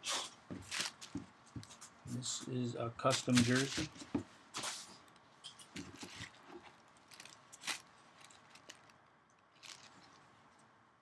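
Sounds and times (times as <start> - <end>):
trading card clicks and rustles: 3.0 - 10.2.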